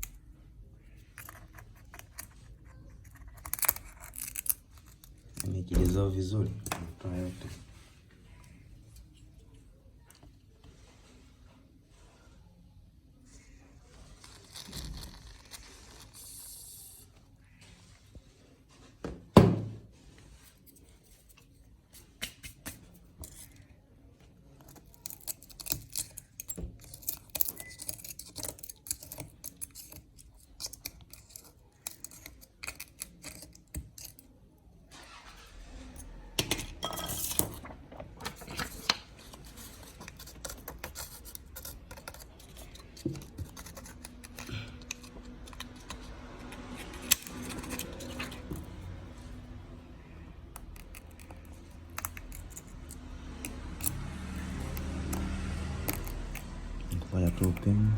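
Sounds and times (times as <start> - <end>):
hand tools scraping and clicking on glass: 24.6 - 34.3, 36.4 - 49.1, 50.5 - 57.8.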